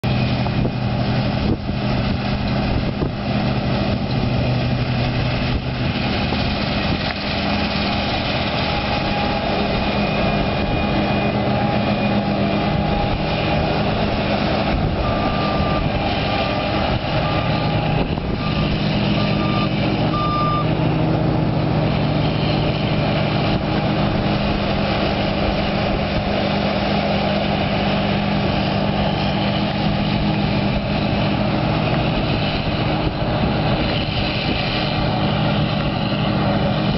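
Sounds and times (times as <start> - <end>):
diesel engine running: 0.0 - 36.9
short high beeps: 19.3 - 20.7.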